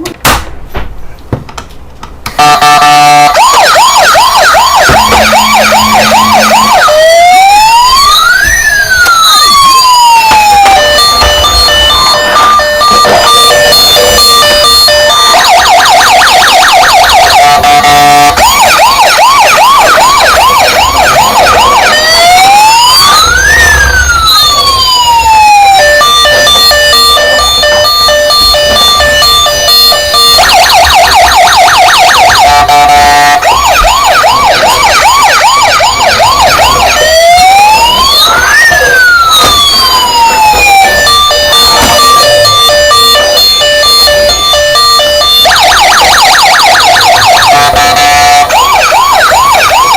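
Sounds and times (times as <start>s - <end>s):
toy electronic siren: 2.4s - 49.9s
electronic beeping tones: 10.8s - 15.3s.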